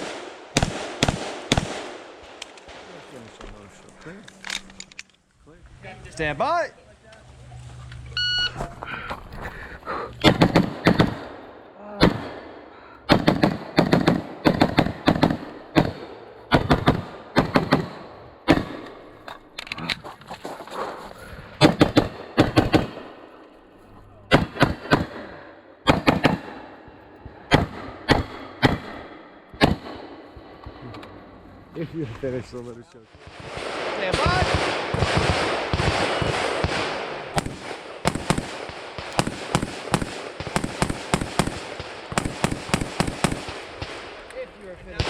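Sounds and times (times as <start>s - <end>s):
carbine gunshots: 0.0s - 3.2s, 10.2s - 19.1s, 21.6s - 23.4s, 24.3s - 26.8s, 27.4s - 30.6s, 33.2s - 45.0s
shot timer beep: 8.2s - 8.6s.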